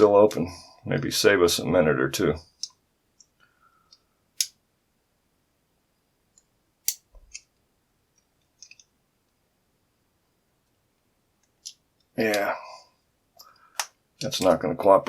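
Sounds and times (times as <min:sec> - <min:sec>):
metal tool clicks: 0:06.8 - 0:07.4.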